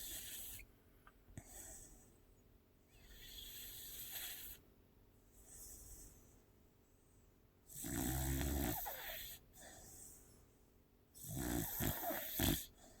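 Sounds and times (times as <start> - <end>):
dog snoring: 0.0 - 0.6, 2.9 - 4.6, 7.7 - 9.8, 11.2 - 12.9.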